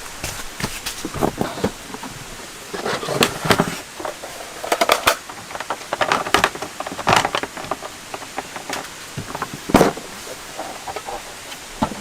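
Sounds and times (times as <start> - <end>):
steady rain hiss: 0.0 - 12.0.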